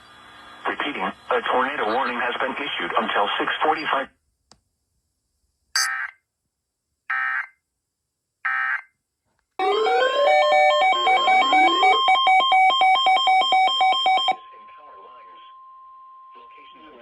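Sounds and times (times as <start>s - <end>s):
electronic alarm tone: 5.8s - 6.1s, 9.6s - 14.9s
digital data bursts: 9.7s - 13.4s.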